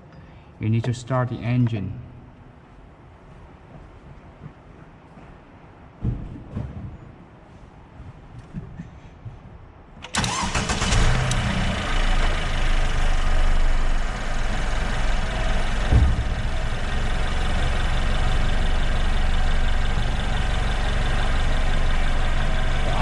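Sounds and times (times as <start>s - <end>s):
car engine idling: 10.1s - 23.0s
low thump: 15.8s - 16.6s.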